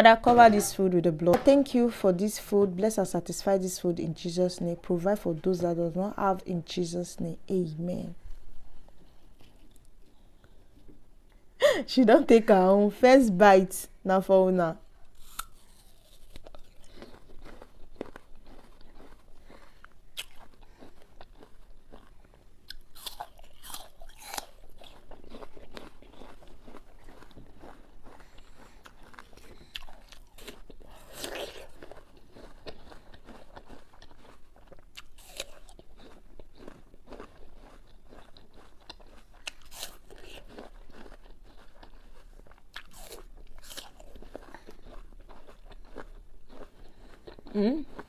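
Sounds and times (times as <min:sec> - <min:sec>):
apple crunching being chewed: 0:08.8 - 0:10.9, 0:14.9 - 0:48.0.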